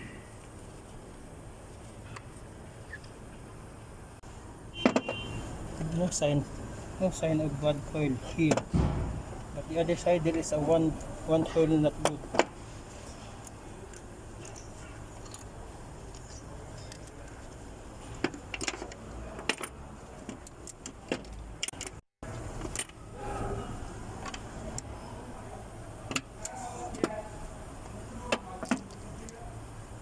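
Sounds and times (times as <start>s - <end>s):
steady low hum: 0.0s - 20.2s.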